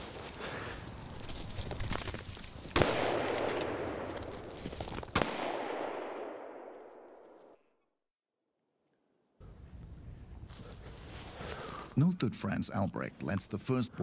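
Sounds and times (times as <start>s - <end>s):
rifle shots: 2.8s - 4.5s, 5.1s - 7.6s.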